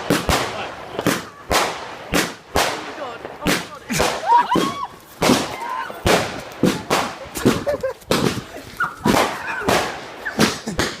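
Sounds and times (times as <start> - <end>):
fireworks banging: 0.0 - 11.0.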